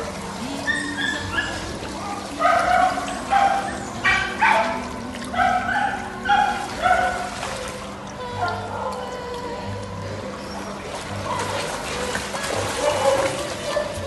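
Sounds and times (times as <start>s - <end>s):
dog barking: 2.4s - 4.8s, 5.4s - 7.3s.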